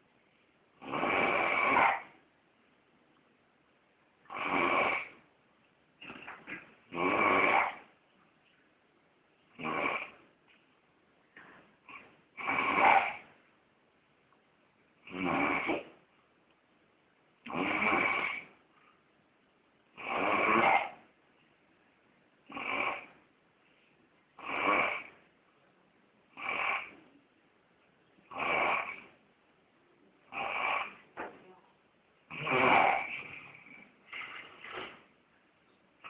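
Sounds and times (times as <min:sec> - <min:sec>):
person snoring: 0:00.8 - 0:02.1, 0:04.3 - 0:05.2, 0:06.9 - 0:07.9, 0:09.6 - 0:10.2, 0:11.9 - 0:13.3, 0:15.0 - 0:15.9, 0:17.5 - 0:18.6, 0:20.0 - 0:21.0, 0:22.5 - 0:23.2, 0:24.4 - 0:25.2, 0:26.4 - 0:27.0, 0:28.3 - 0:29.1, 0:30.3 - 0:31.0, 0:32.3 - 0:34.0.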